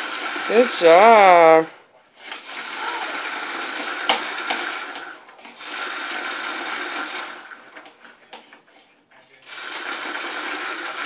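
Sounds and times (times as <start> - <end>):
vacuum cleaner whirring: 0.0 - 8.5, 9.4 - 11.0.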